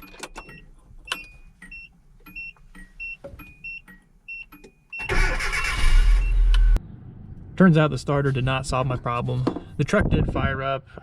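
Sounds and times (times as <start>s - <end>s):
engine cranking and starting: 5.0s - 6.8s.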